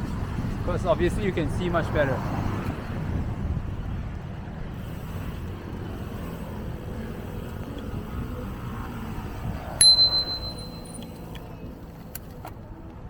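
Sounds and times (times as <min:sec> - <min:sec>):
bicycle tyre noise: 0:04.7 - 0:11.2
bicycle bell ding: 0:09.8 - 0:11.3.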